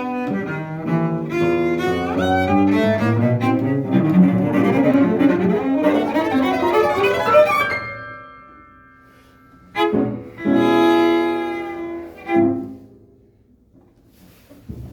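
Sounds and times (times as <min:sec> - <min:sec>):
cello and piano duo: 0:00.0 - 0:14.8.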